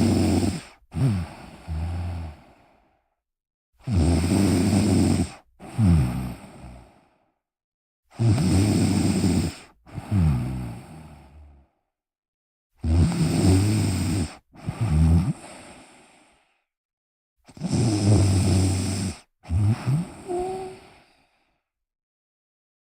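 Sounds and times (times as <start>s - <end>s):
person snoring: 0.0s - 2.8s, 3.8s - 7.1s, 8.1s - 11.7s, 12.8s - 16.7s, 17.5s - 21.7s.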